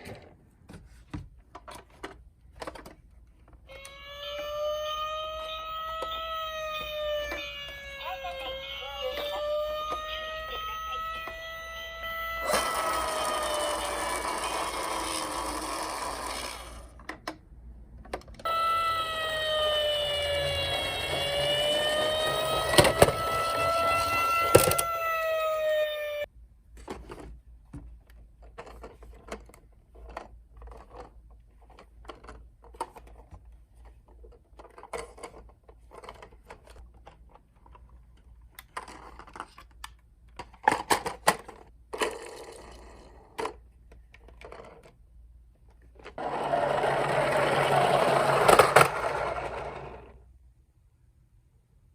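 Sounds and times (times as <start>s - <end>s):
toy electronic siren wailing: 3.7s - 16.7s, 18.4s - 26.3s.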